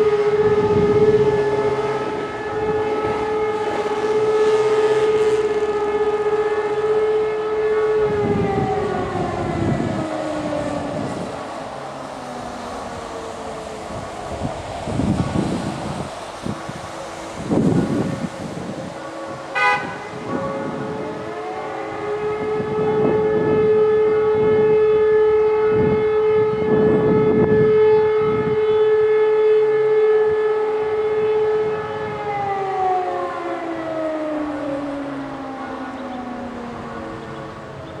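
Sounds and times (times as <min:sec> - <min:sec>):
sirens wailing: 0:00.0 - 0:38.0
wind buffeting microphone: 0:00.0 - 0:38.0.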